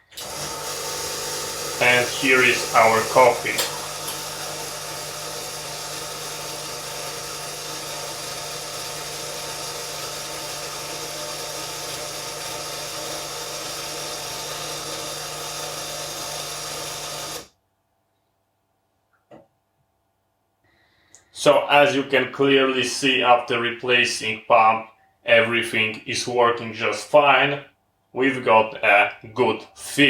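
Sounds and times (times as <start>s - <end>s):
coffee machine motor whirring: 0.0s - 17.5s.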